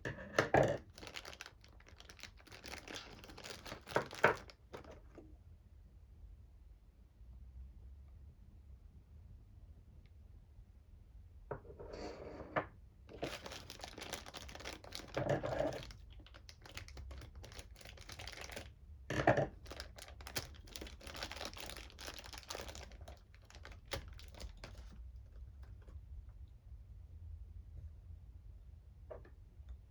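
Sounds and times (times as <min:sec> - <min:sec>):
packaging crinkling and tearing: 0:00.7 - 0:05.0, 0:13.1 - 0:18.7, 0:19.5 - 0:25.7
packaging rustling: 0:00.8 - 0:05.0, 0:13.1 - 0:18.7, 0:19.5 - 0:25.7.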